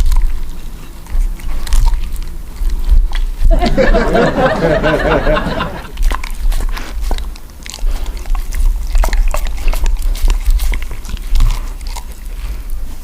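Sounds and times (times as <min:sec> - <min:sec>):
dog chewing and crunching food: 0:00.0 - 0:13.0
person speaking: 0:03.5 - 0:06.0.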